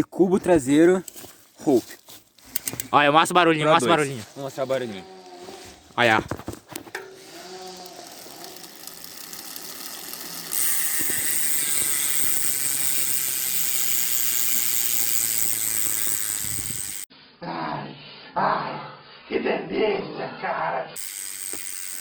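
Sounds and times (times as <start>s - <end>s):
bicycle hub freewheel ratcheting: 2.5s - 3.0s, 6.8s - 17.1s, 21.0s - 22.0s.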